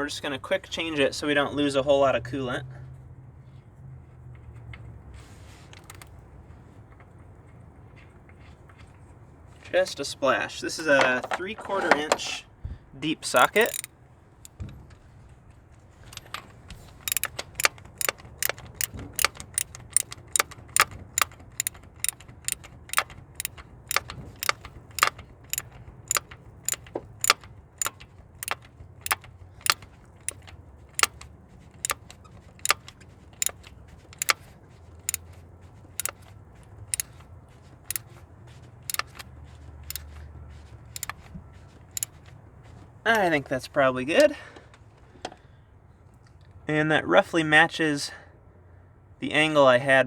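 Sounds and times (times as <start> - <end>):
socket ratchet clicking: 5.8 - 6.1, 13.4 - 13.9, 17.0 - 31.2, 31.8 - 34.4, 36.0 - 36.2, 36.9 - 37.2, 38.9 - 39.2, 41.0 - 41.3.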